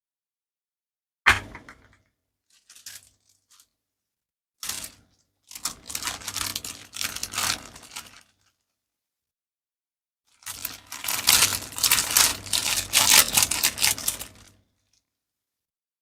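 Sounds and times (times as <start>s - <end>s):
plastic wrapping crinkling: 4.6s - 8.4s, 10.4s - 14.5s.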